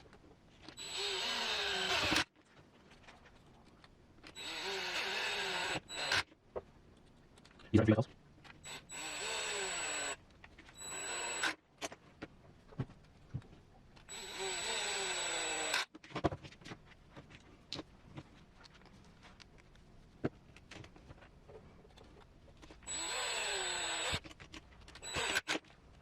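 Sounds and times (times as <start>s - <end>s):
small parts clicking: 7.0s - 7.7s
handheld power tool bursts: 22.9s - 24.3s, 25.0s - 25.6s.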